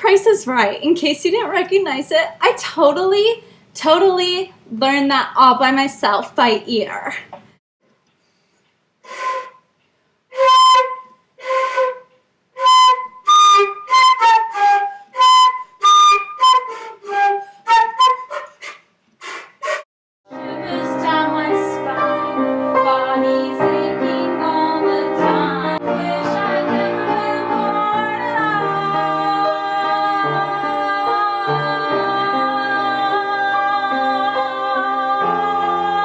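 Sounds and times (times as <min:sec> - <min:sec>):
breathy wind instrument melody: 0:09.0 - 0:09.6, 0:10.3 - 0:19.8.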